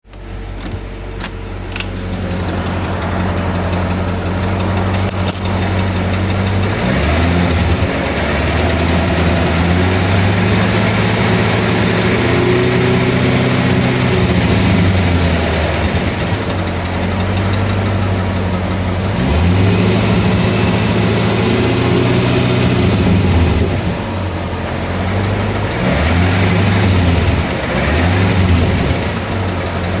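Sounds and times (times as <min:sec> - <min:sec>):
car engine idling and revving: 0:00.0 - 0:30.0
engine ticking noise: 0:00.0 - 0:30.0.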